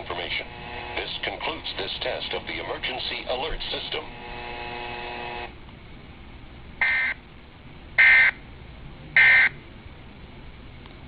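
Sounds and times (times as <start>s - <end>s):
buzzy digital data tones: 0.0s - 1.7s, 3.4s - 5.5s, 6.8s - 7.2s.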